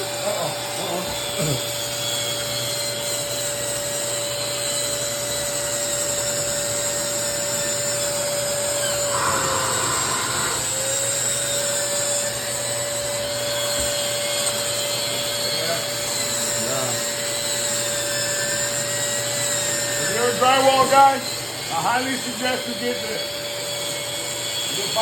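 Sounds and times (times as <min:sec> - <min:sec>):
drywall sander motor hum: 0:04.5 - 0:20.9
vacuum airy hiss: 0:08.6 - 0:11.1.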